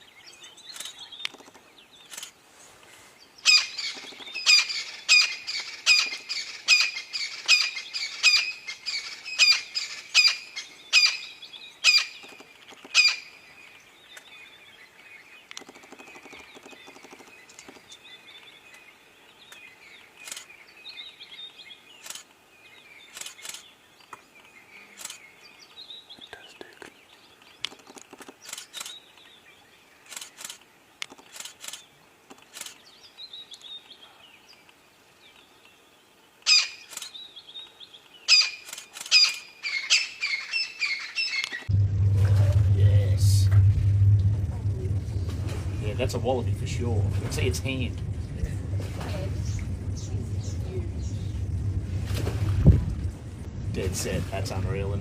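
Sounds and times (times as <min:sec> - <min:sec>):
bird calling sharply: 0:36.5 - 0:37.1, 0:38.3 - 0:41.7.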